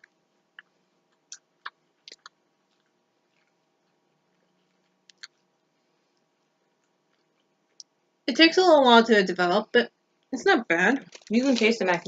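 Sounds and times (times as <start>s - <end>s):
chewing mouth clicks: 1.3s - 4.0s.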